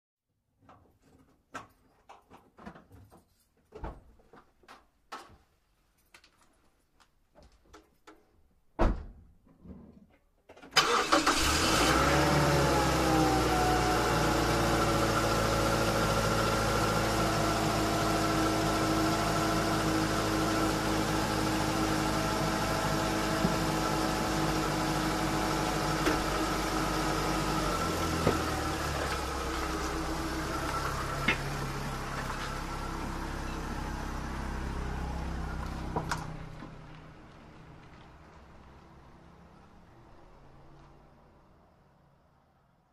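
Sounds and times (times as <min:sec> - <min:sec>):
loud thump: 0:08.8 - 0:09.2
car engine starting and idling: 0:10.5 - 0:41.5.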